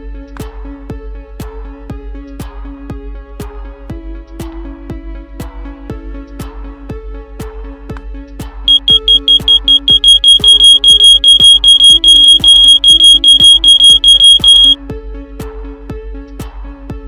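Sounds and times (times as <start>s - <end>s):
electronic music: 8.7s - 14.8s
smoke alarm beeping: 8.7s - 14.8s.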